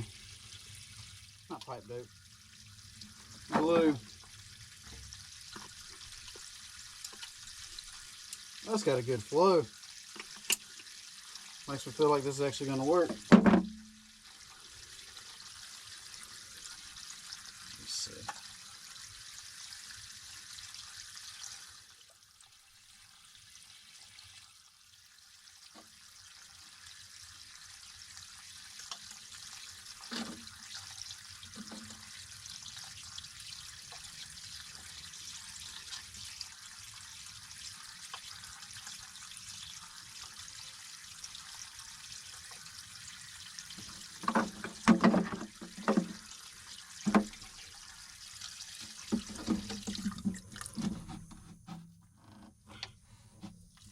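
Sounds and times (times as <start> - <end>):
water trickling from pipe: 0.0 - 53.9
knocks on plastic pipe: 13.1 - 13.9, 47.1 - 47.4.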